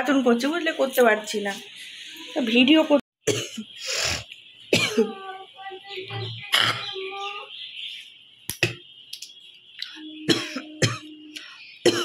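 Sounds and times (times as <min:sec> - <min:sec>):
woman coughing: 0:03.2 - 0:03.7, 0:04.7 - 0:05.2, 0:10.3 - 0:11.2.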